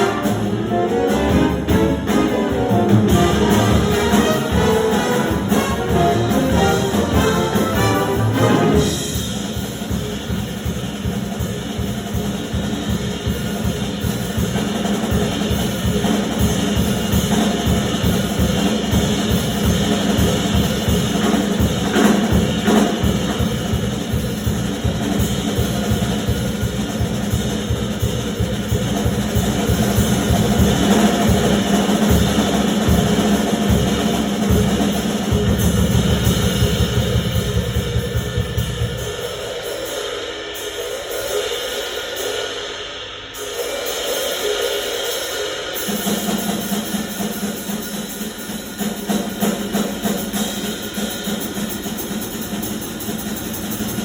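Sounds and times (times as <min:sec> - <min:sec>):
bass drum and snare strokes: 0:00.0 - 0:41.2
big band music: 0:00.0 - 0:54.0
cymbals: 0:00.0 - 0:54.0.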